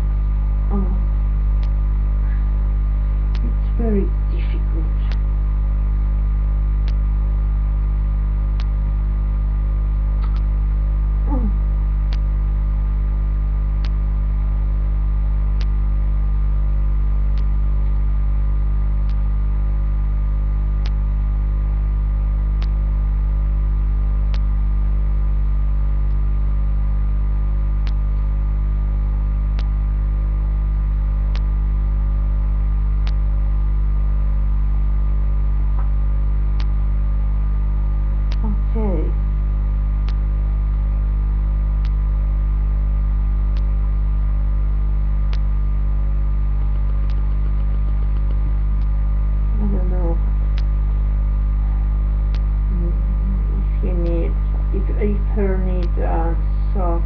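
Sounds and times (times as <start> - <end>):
electrical mains hum: 0.0 - 57.0
faint clicks: 10.2 - 10.5, 15.6 - 15.8, 17.3 - 18.0, 24.3 - 24.5, 33.0 - 33.2, 46.6 - 49.0, 52.3 - 52.5.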